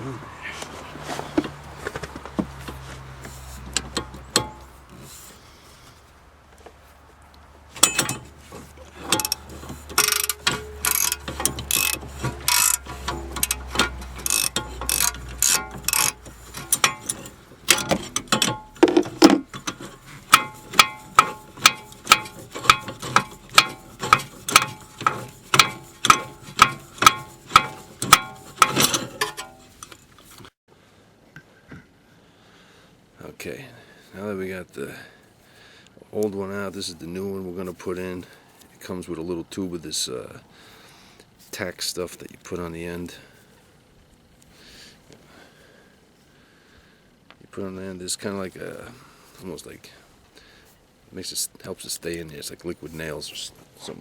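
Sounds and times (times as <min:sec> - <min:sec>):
ratchet clicking: 0:07.8 - 0:08.4, 0:09.0 - 0:30.5.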